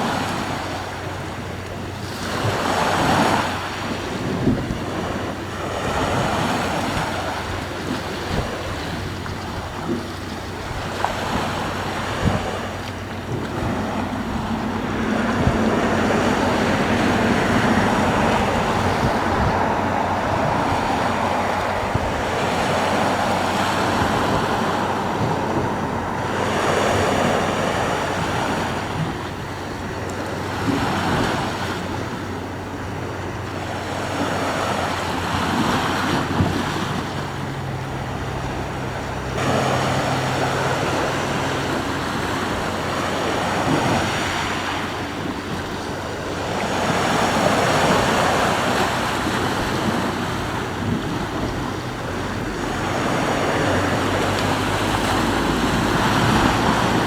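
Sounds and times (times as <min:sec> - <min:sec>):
sea waves breaking on shore: 0:00.0 - 0:57.0
wind on microphone: 0:00.0 - 0:57.0.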